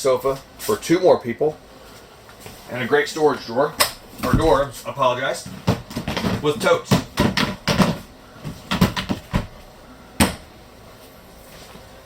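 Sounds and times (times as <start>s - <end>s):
plastic totes knocking and clattering: 4.1s - 9.6s
door shutting knock: 4.2s - 4.9s.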